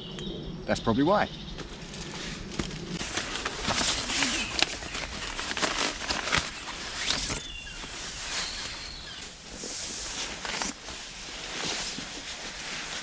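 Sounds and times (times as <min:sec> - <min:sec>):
camping gear rustling and scraping: 0:01.6 - 0:13.0.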